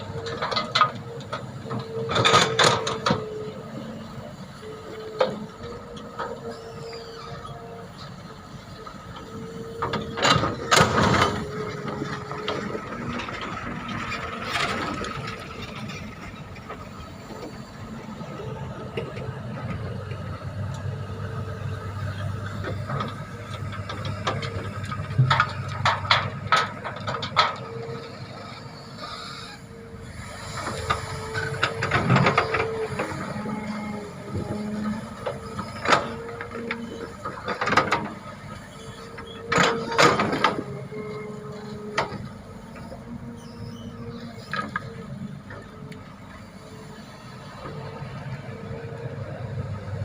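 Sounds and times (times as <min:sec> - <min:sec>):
excavator diesel engine: 0:00.0 - 0:50.0
hydraulic whine: 0:27.6 - 0:45.9.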